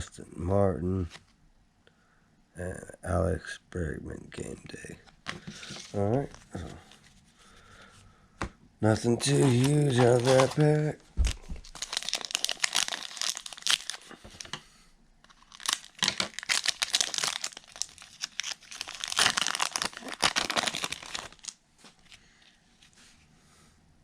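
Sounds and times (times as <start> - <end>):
wrapper crinkling and tearing: 9.0 - 14.6, 15.3 - 22.2.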